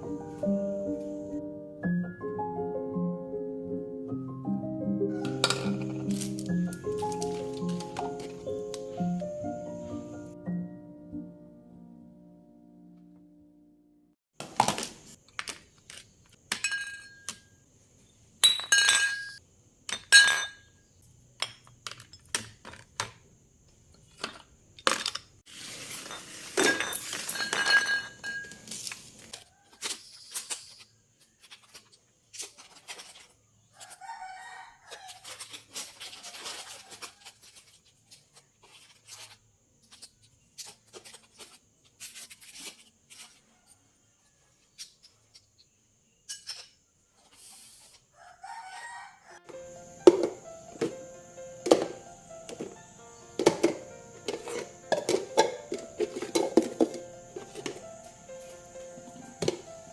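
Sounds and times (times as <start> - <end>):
dishes clinking and clattering: 5.1 - 6.1, 16.5 - 17.4, 18.4 - 20.7, 25.8 - 28.7, 46.3 - 46.8, 53.4 - 57.8.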